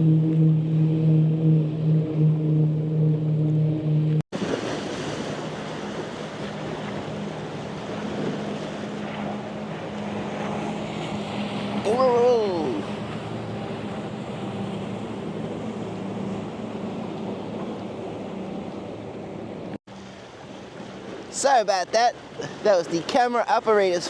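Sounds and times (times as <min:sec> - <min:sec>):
motorboat engine humming: 0:00.0 - 0:24.0
rushing water and wind: 0:04.3 - 0:24.0.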